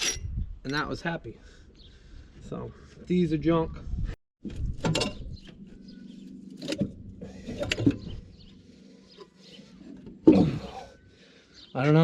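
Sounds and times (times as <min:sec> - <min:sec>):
metal tools clinking and knocking: 0:00.0 - 0:00.8, 0:04.8 - 0:05.3.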